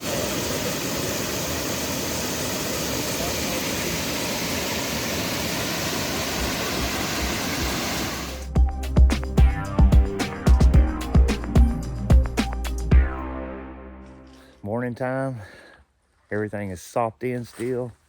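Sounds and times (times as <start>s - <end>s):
waterfall roaring: 0.0s - 8.4s
music with plucked notes: 8.5s - 14.3s.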